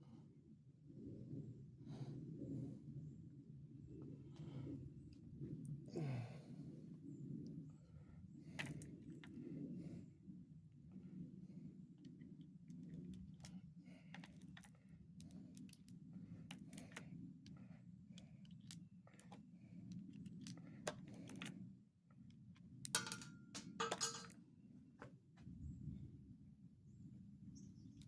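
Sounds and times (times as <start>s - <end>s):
metallic clicks of cartridges: 22.9s - 24.4s.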